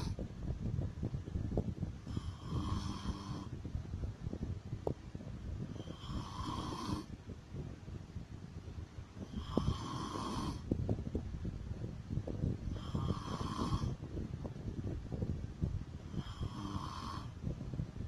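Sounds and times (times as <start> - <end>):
woman snoring: 2.0 - 3.5, 5.8 - 7.1, 9.3 - 10.6, 12.7 - 14.0, 16.1 - 17.4.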